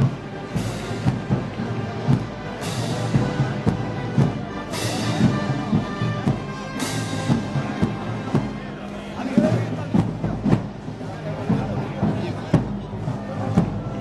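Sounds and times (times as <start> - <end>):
bass drum beating: 0.0 - 8.7
brass band playing: 0.0 - 14.0
cymbal crashes: 2.1 - 7.9.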